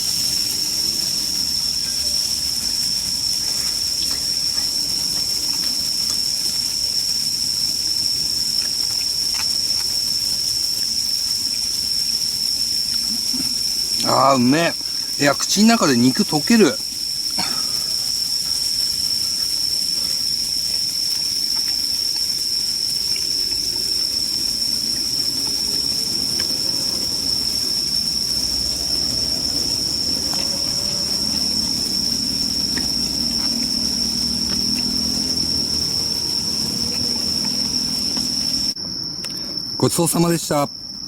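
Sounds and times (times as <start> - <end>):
crickets chirring: 0.0 - 41.0
low rushing hiss: 13.0 - 18.4.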